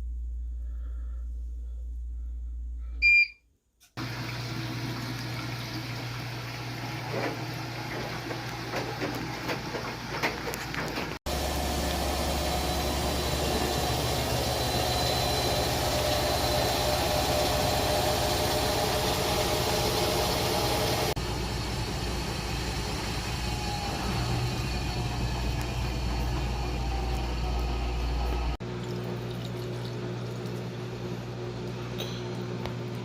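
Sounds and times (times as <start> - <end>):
drain pump motor humming: 4.0 - 33.0.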